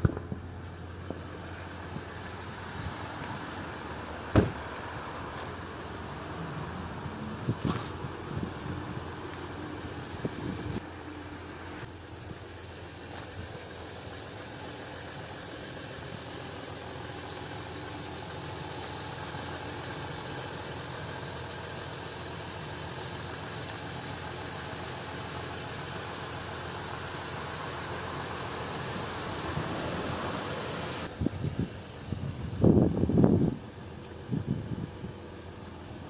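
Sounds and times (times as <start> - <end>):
diesel engine idling: 0.0 - 36.0.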